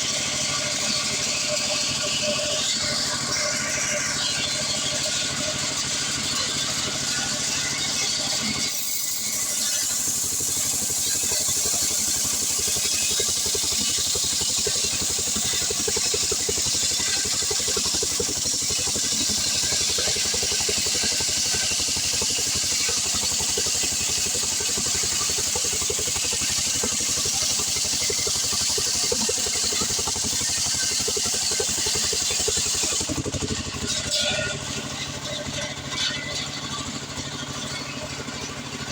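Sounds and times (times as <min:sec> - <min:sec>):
chainsaw cutting log: 0:07.0 - 0:34.6.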